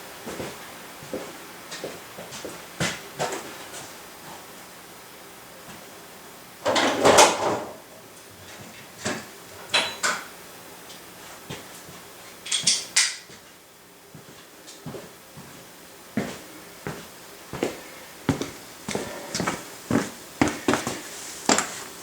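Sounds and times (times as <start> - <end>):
metal tools clinking: 12.4 - 13.2.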